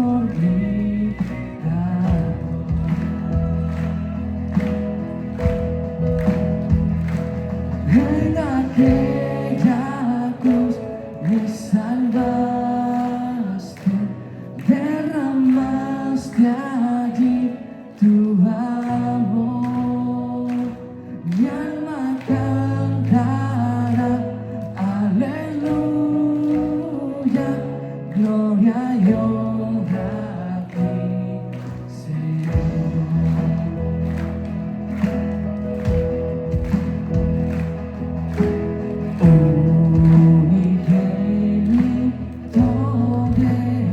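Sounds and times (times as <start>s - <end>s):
worship band playing: 0.0s - 43.9s
steady drum beat: 2.1s - 9.4s, 32.6s - 41.2s
person singing lead: 7.8s - 34.1s, 39.2s - 43.9s.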